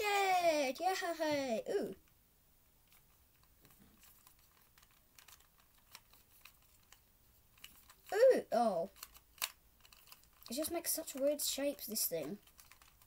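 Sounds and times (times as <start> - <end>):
plastic puzzle cube clicking: 2.9 - 8.1, 8.8 - 11.5, 12.3 - 13.0.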